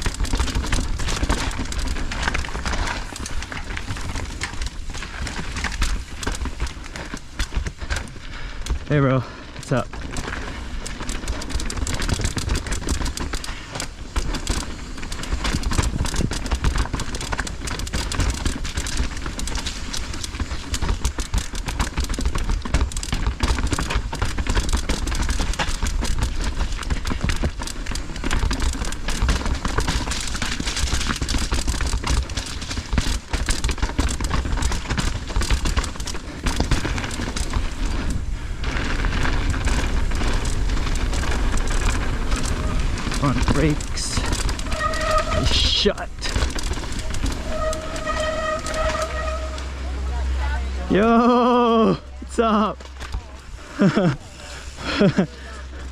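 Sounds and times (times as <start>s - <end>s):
tyres crunching over dirt and rocks: 0.0s - 49.8s
bike rattling: 0.0s - 55.9s.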